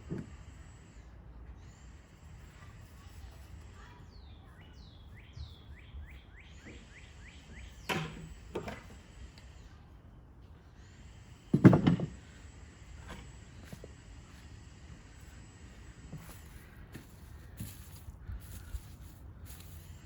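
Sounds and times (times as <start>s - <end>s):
crunching rustle: 16.1s - 20.0s.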